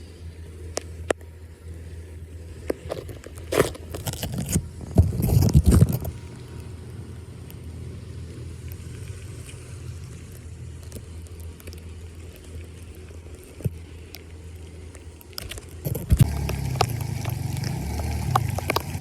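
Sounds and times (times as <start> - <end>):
steady low rumble: 0.0 - 19.0
scraping and splashing in drain: 15.4 - 19.0.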